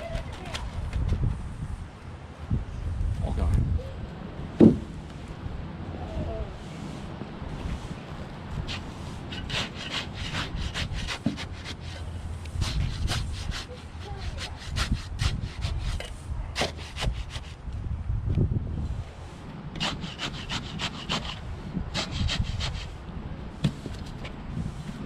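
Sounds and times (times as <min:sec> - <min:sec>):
hand saw cutting wood: 0:08.6 - 0:17.6, 0:19.8 - 0:23.0.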